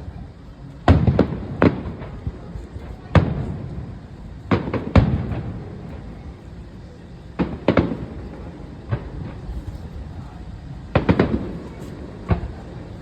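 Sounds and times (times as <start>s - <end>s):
fireworks bursting with bangs: 0.8s - 6.1s, 7.3s - 10.2s, 10.9s - 13.0s.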